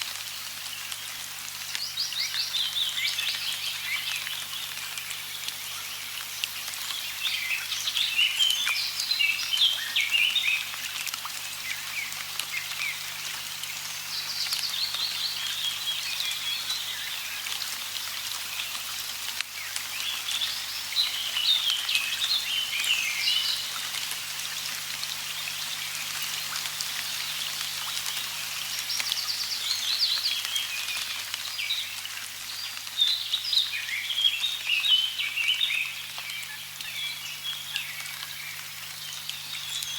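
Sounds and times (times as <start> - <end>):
light rain hiss: 0.0 - 39.9
birds chirping: 1.8 - 17.5, 19.6 - 31.0
raindrop ticks: 3.0 - 7.6, 8.4 - 33.6, 35.7 - 39.9.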